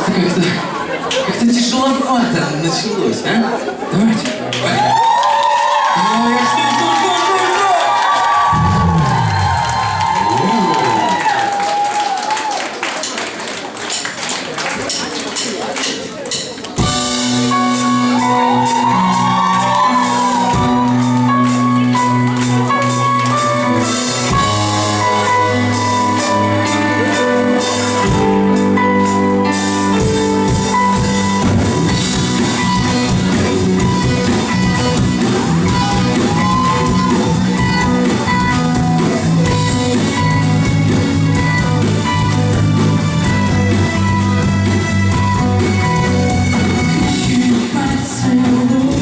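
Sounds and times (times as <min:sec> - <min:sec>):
live rock band playing: 0:08.3 - 0:11.8, 0:14.9 - 0:49.0.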